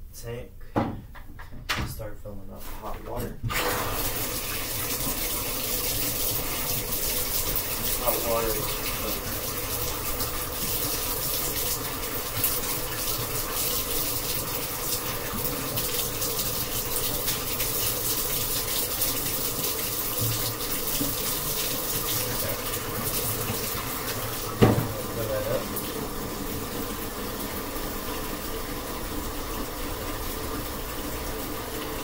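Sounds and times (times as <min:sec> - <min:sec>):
tap water filling a tank: 0:03.1 - 0:32.0.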